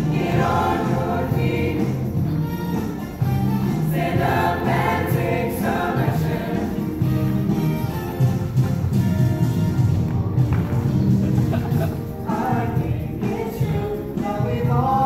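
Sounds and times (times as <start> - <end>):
choir singing: 0.0 - 3.0, 3.7 - 7.2, 12.2 - 15.0
music: 0.0 - 15.0.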